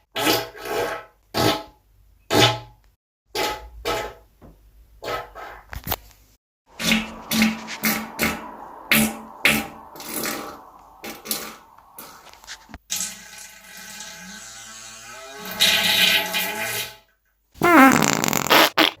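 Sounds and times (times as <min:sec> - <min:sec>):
loud sweeping pitched sound: 0:06.7 - 0:12.7
toilet flushing water rush: 0:06.7 - 0:16.8.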